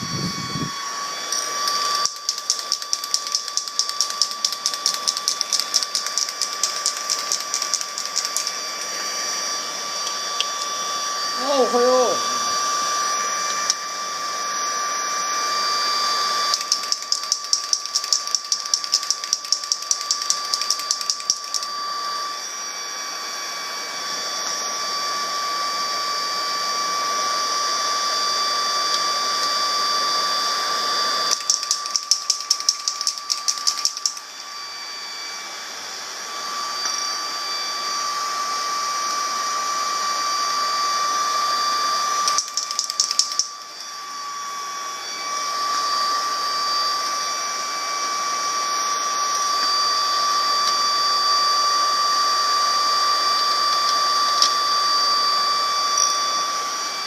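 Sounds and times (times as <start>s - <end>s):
steady high-pitched hum: 0.0s - 57.0s
bicycle mechanism ticking: 2.0s - 8.5s, 16.5s - 21.7s, 31.3s - 34.2s, 42.3s - 43.5s.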